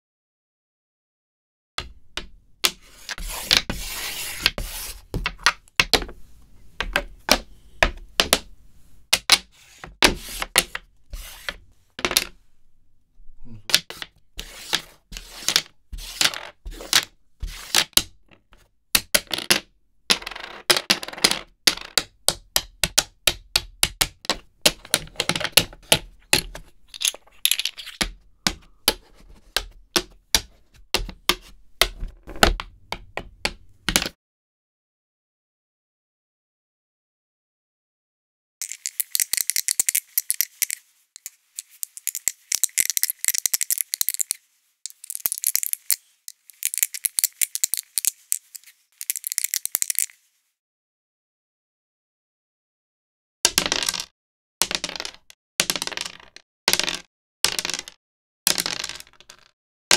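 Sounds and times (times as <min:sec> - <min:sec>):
checkers scraping across board: 0:02.6 - 0:05.1, 0:09.5 - 0:11.6, 0:13.9 - 0:17.9, 0:38.6 - 0:50.2
checkers clacking on board: 0:38.6 - 0:50.1, 0:53.5 - 0:59.5.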